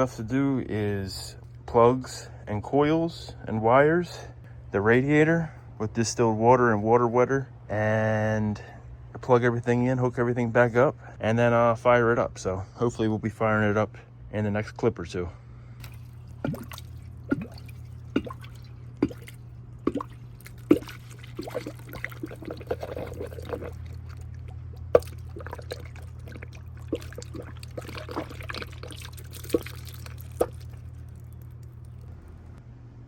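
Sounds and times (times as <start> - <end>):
steady low hum: 0.0 - 33.0.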